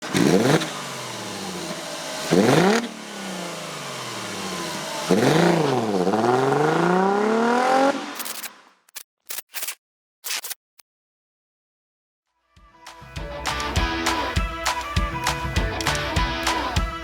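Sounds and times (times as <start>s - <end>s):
car engine revving: 0.0s - 8.4s.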